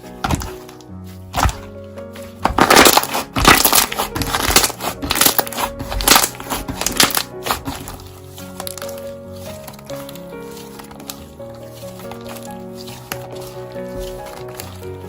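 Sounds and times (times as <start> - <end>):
soft piano music: 0.0 - 15.0
slime crackling when squeezed: 2.4 - 8.0.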